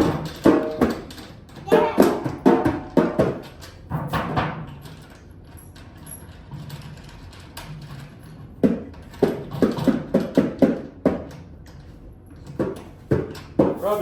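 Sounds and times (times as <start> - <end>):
hollow knocks on drum parts: 0.0 - 1.1, 1.7 - 4.6, 8.6 - 11.3, 12.5 - 13.9.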